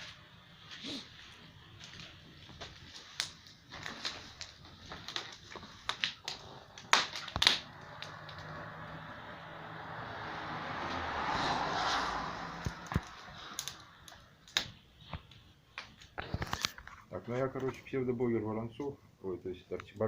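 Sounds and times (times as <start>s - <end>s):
wood fire crackling: 0.0s - 20.0s
rushing noise: 7.6s - 14.0s.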